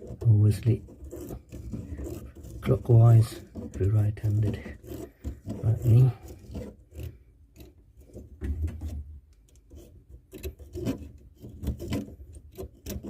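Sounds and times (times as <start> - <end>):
deburring tool scraping metal pipe: 0.0 - 13.0
small metallic clicks: 4.8 - 13.0.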